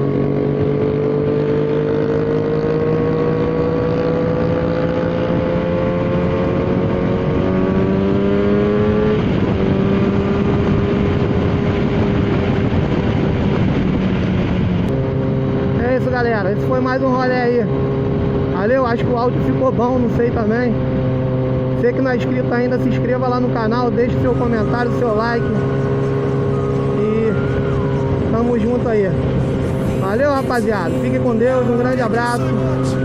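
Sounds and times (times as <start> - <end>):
motorcycle engine accelerating: 0.0 - 33.0.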